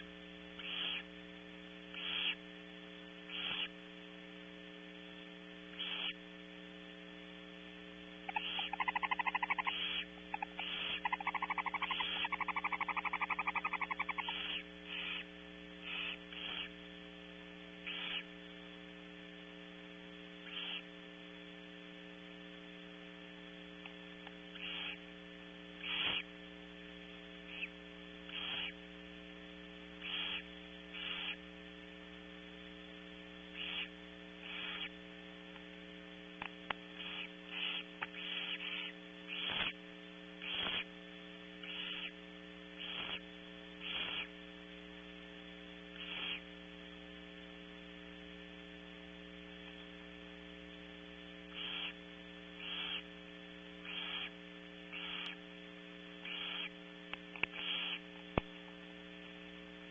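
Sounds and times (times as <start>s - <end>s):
electrical mains hum: 0.0s - 59.9s
owl nestlings hissing: 0.6s - 1.1s, 1.9s - 2.4s, 3.3s - 3.8s, 5.8s - 6.2s, 8.2s - 16.8s, 17.9s - 18.4s, 20.4s - 20.9s, 24.5s - 25.0s, 25.8s - 26.3s, 27.5s - 28.8s, 30.0s - 31.5s, 33.5s - 35.0s, 36.4s - 39.8s, 40.4s - 41.0s, 41.6s - 44.4s, 46.0s - 46.5s, 51.5s - 52.0s, 52.6s - 53.1s, 53.8s - 55.4s, 56.2s - 56.8s, 57.4s - 58.1s.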